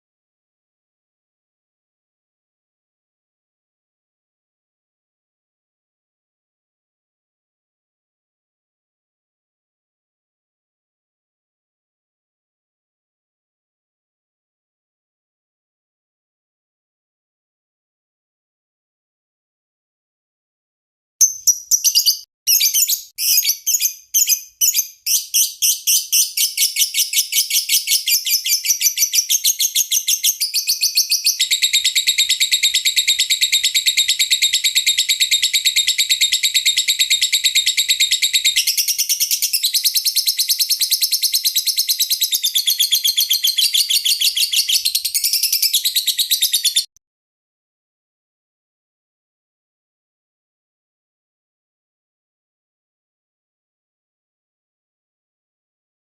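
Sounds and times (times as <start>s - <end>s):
lovebird chirping and trilling: 21.2s - 46.9s.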